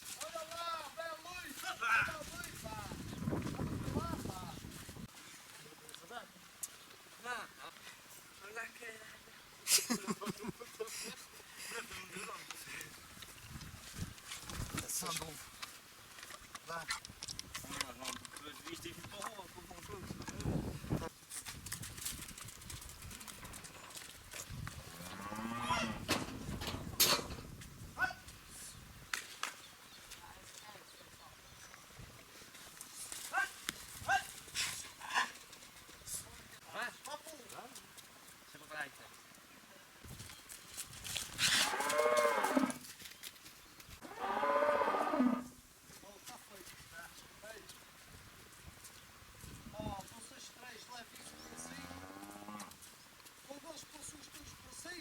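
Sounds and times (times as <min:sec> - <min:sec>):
cattle mooing: 0:25.0 - 0:26.0
cow mooing: 0:25.0 - 0:26.0, 0:44.0 - 0:45.6.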